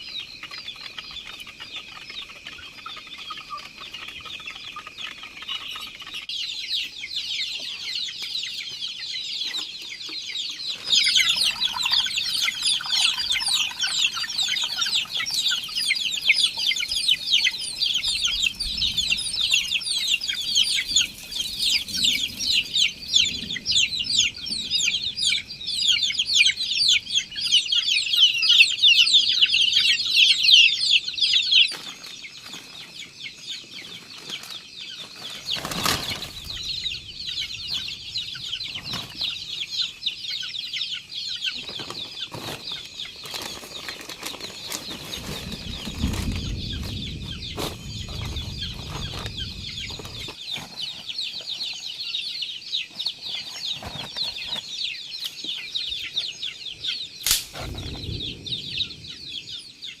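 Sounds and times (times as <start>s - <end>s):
chicks peeping: 0.0s - 60.0s
low rumble: 45.9s - 50.2s, 57.5s - 59.7s.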